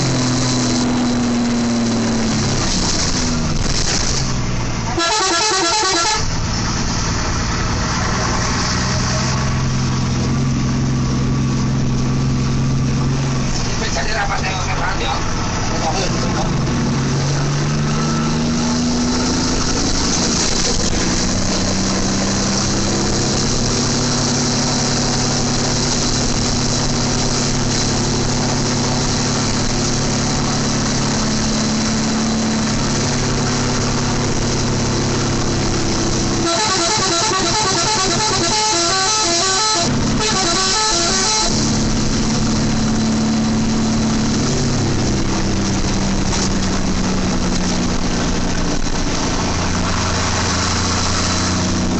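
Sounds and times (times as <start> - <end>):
multi-tone bus horn tune: 4.8 - 6.4, 36.3 - 41.8.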